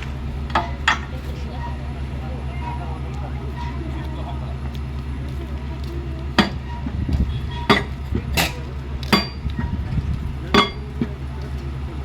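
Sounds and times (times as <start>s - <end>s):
sharp metallic clanks: 0.0s - 1.9s, 6.4s - 11.2s
drilling rig engine drone: 0.0s - 12.0s.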